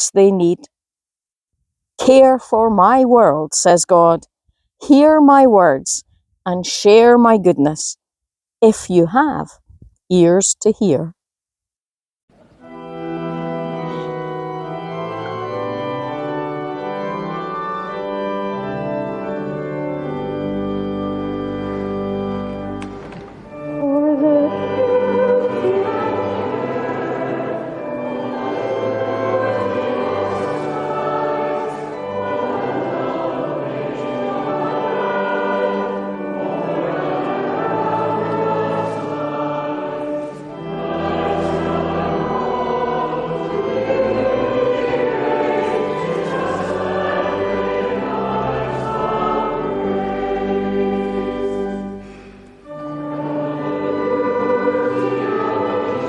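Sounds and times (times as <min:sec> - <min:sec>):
instrumental accompaniment: 0:12.6 - 0:24.8
choir singing a hymn: 0:23.8 - 0:56.0.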